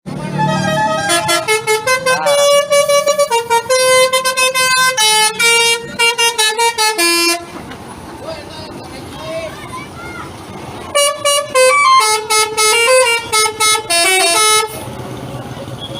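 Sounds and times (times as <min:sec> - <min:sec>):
musical bus air horn melody: 0:00.1 - 0:07.6, 0:10.9 - 0:14.9.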